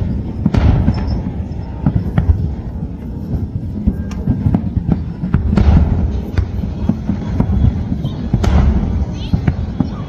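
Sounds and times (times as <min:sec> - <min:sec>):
firework bangs: 0:00.0 - 0:10.0
rumble of distant bursts: 0:00.0 - 0:10.0.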